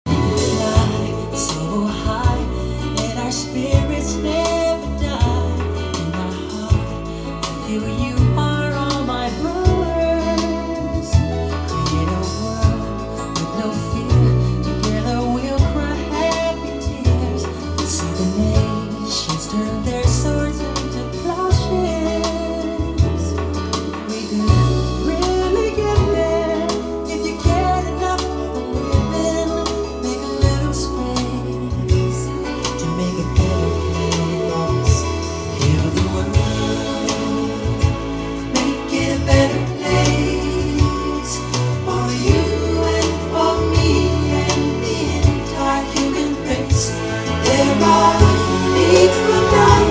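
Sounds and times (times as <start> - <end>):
bass notes: 0.0 - 49.9
music with sung vocal: 0.0 - 49.9
person singing: 0.0 - 49.9
song through speakers: 0.0 - 49.9
drum hits: 46.7 - 49.9.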